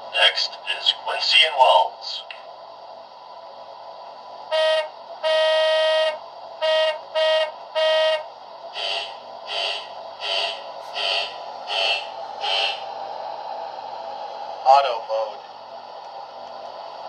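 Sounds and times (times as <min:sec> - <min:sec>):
train horn blasts: 0:04.5 - 0:08.3.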